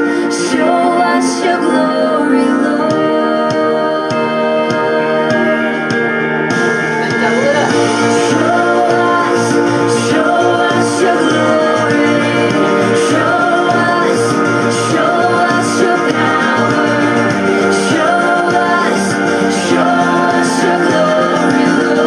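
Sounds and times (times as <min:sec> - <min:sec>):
worship song with band: 0:00.0 - 0:22.0.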